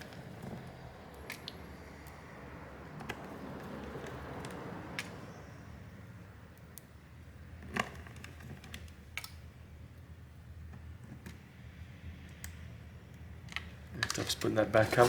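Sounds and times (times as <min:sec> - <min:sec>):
soft rustling: 0:14.1 - 0:15.0.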